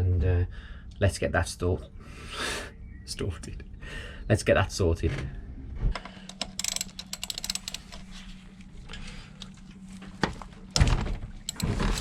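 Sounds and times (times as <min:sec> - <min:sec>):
ratchet wrench clicking: 0:06.3 - 0:08.0, 0:11.5 - 0:12.0.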